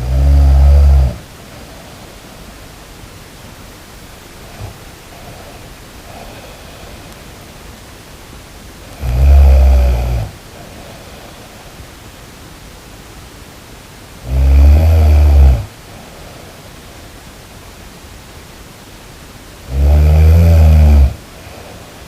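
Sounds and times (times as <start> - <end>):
loud low snores: 0.0 - 1.3, 4.4 - 7.2, 8.9 - 11.6, 14.2 - 15.8, 19.6 - 21.9
steady background hiss: 0.0 - 22.0.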